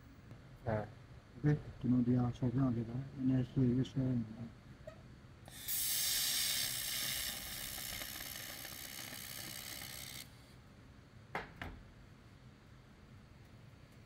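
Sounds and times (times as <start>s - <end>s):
laser welder sizzling hiss: 5.5s - 10.4s.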